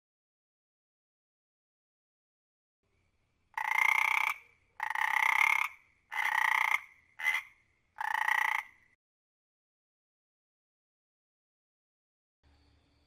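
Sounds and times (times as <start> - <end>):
frog croaking: 3.6 - 9.0.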